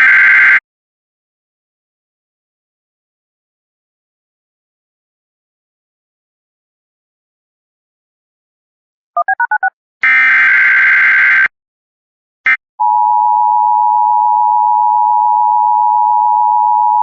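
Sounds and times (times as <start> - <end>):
harsh digital data burst: 0.0 - 0.6
alternating beeps: 9.2 - 9.7.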